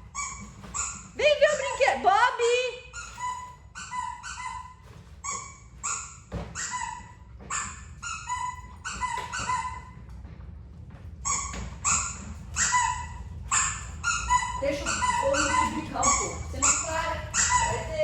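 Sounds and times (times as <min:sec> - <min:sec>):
squeaky toy squeaking: 0:00.0 - 0:10.0, 0:11.2 - 0:18.0.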